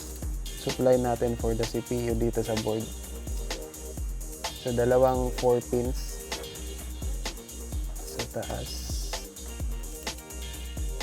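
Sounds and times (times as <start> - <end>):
electronic music with beat: 0.0 - 11.0.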